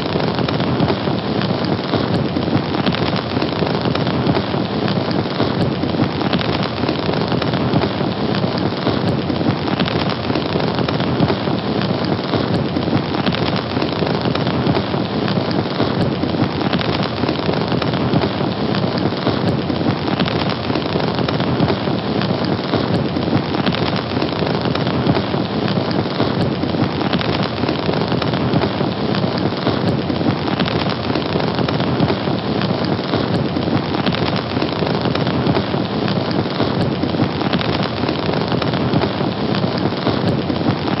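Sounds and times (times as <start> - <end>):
fire crackling: 0.0 - 41.0.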